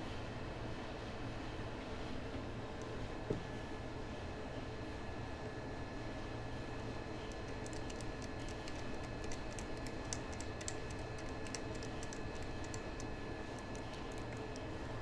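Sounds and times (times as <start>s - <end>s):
light clicks and ticks: 7.3s - 14.8s.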